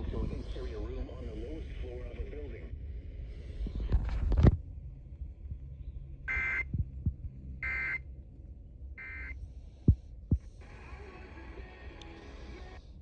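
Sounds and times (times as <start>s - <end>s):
low hum: 0.0s - 13.0s
low thumps: 6.6s - 7.6s.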